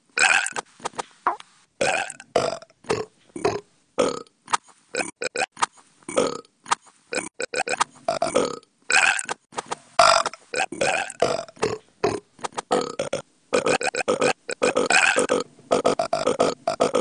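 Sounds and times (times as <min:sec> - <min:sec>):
person burping: 0:01.3 - 0:04.3, 0:06.1 - 0:06.4, 0:07.2 - 0:09.3, 0:10.0 - 0:17.0.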